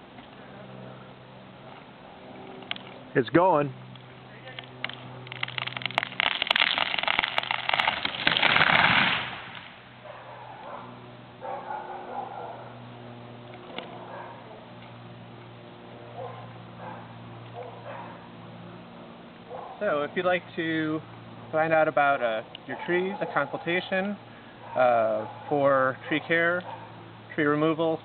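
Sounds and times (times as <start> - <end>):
steady low hum: 0.0 - 6.4, 9.2 - 28.0
wood cracking and snapping: 4.8 - 9.7
tree crashing to ground: 4.8 - 9.8.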